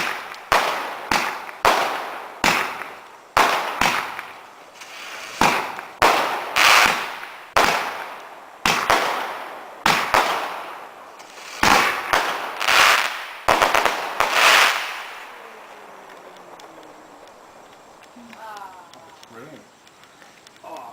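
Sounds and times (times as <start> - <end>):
firework cake bangs: 0.0 - 10.8, 11.5 - 15.3
crackling hiss: 0.0 - 20.9.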